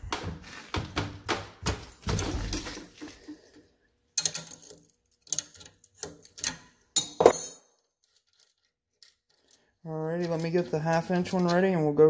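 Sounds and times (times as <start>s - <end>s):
metal wrenches clinking: 4.2s - 11.8s.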